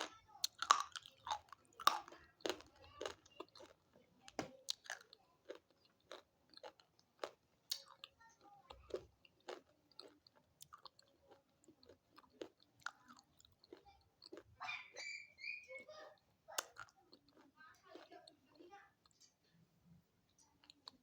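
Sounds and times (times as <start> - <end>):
person chewing crunchy stone: 0.0 - 14.5, 16.6 - 18.4.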